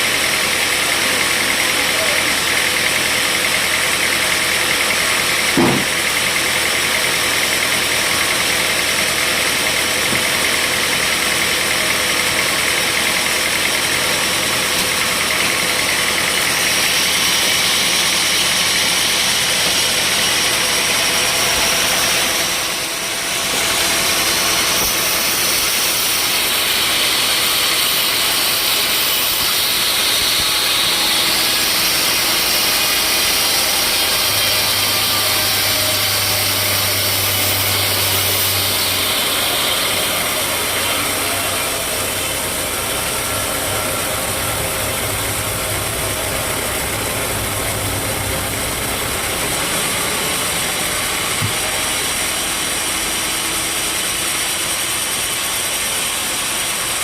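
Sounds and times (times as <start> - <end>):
sawmill machinery droning: 0.0 - 57.0
brief knock: 5.6 - 6.0.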